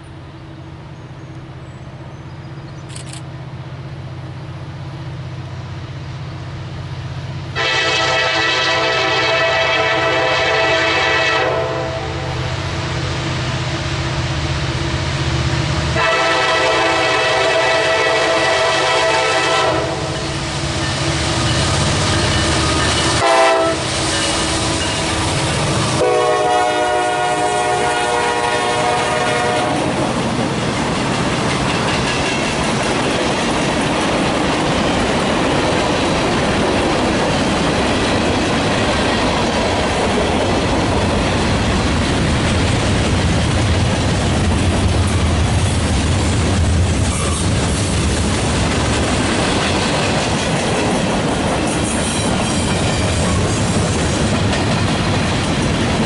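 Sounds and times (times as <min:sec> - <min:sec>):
train rumbling past: 0:00.0 - 0:56.0
locomotive air horn blasts: 0:07.5 - 0:12.5, 0:16.0 - 0:20.4, 0:22.6 - 0:25.2, 0:25.9 - 0:29.9
wheels clicking over rail joints: 0:30.0 - 0:56.0.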